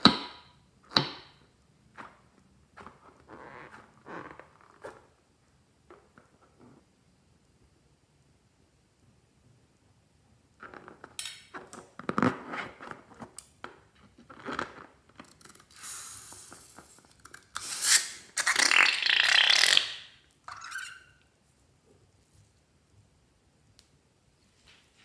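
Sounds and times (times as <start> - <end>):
rubbery scraping: 2.0 - 5.2.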